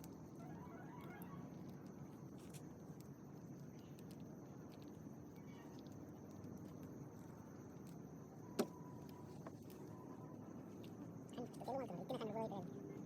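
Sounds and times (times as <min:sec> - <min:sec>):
small ticks: 0:00.0 - 0:10.0.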